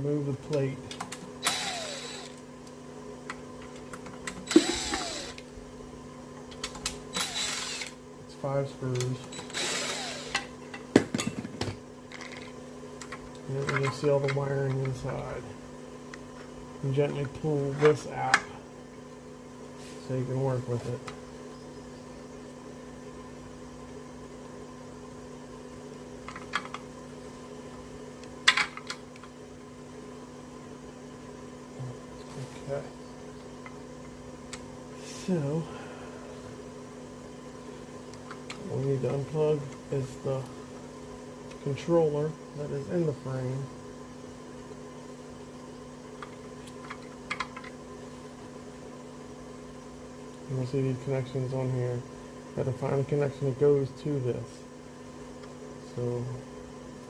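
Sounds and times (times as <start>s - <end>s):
steady background hum: 0.0s - 57.0s
cordless drill spinning: 1.4s - 2.4s, 4.4s - 5.5s, 7.1s - 8.0s, 9.3s - 10.5s.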